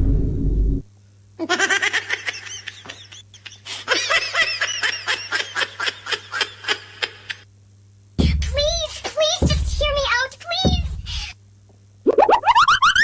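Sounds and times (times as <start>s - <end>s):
loud deep noise: 0.0s - 0.8s
fast high-pitched laughter: 12.2s - 13.0s.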